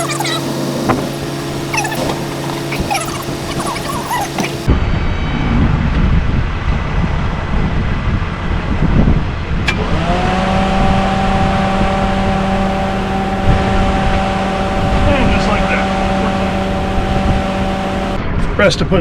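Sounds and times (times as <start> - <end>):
excavator engine rumble: 0.0 - 18.2
rising whine: 0.0 - 18.4.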